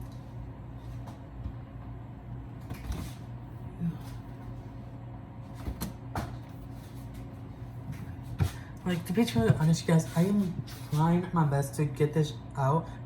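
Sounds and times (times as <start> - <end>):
steady low hum: 0.0 - 13.0
refrigerator knocking and bumping: 7.9 - 9.8.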